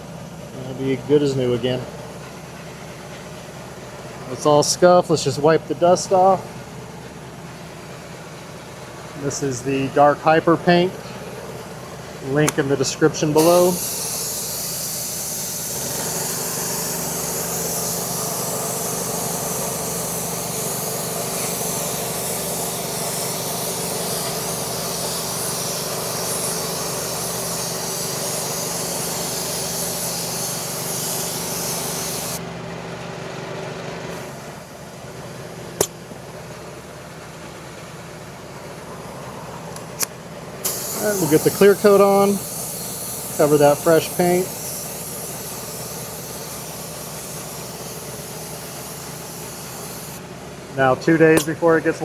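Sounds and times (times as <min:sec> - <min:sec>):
steady motor hum: 0:00.0 - 0:52.0
paint spray gun hissing: 0:07.9 - 0:32.4, 0:34.1 - 0:36.5, 0:39.6 - 0:52.0
sharp click: 0:12.4 - 0:12.8, 0:35.8 - 0:36.0, 0:51.4 - 0:51.6.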